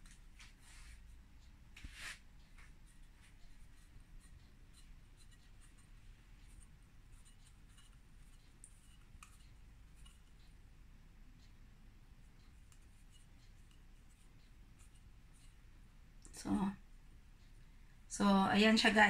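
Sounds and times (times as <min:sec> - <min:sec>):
hands rubbing dough: 0:01.8 - 0:10.4.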